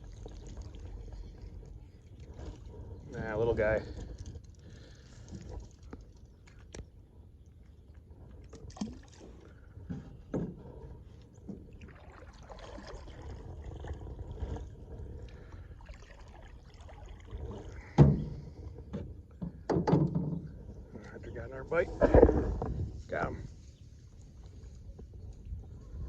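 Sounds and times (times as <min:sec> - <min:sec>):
faint water sounds: 0:00.0 - 0:26.0.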